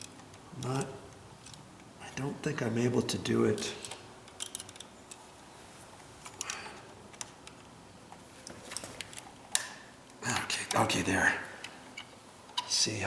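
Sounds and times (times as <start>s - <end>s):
screwdriver ticks and scraping: 0.0s - 2.2s, 3.5s - 5.3s, 6.2s - 7.8s.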